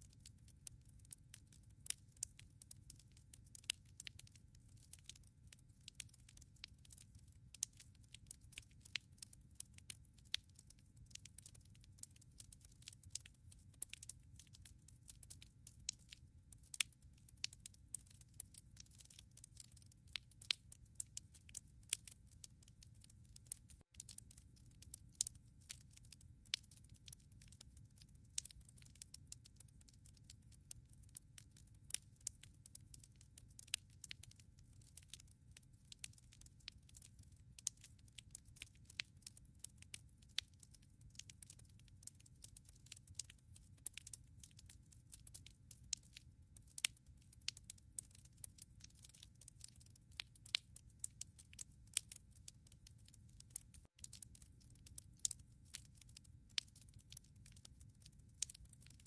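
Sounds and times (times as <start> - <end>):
firewood crackling: 3.6 - 4.3, 4.9 - 5.2, 8.5 - 22.2, 23.4 - 30.2, 33.6 - 34.3, 36.0 - 39.3, 41.1 - 44.5, 48.0 - 50.6.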